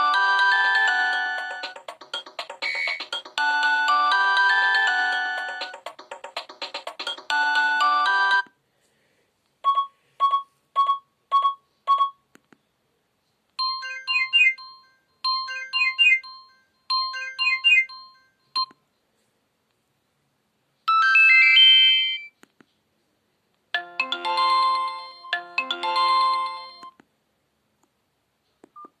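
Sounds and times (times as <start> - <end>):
phone alert tones: 0.0 - 5.9
quick beeps: 2.6 - 3.2.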